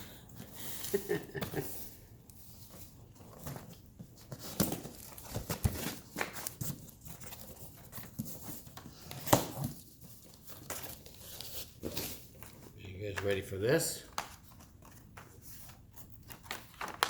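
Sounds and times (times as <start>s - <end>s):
cardboard box rustling: 2.5s - 12.7s.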